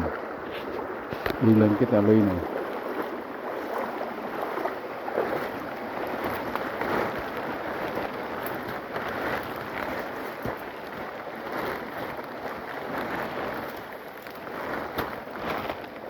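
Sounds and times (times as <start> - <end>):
rain falling in a forest: 6.2 - 16.0.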